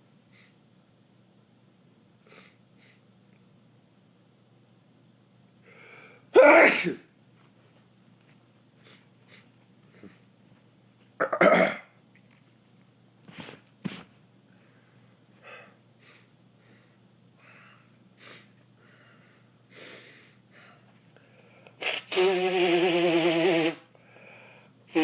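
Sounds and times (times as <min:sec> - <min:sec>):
man sneezing: 0:06.4 - 0:07.1
man sniffing: 0:21.8 - 0:23.9.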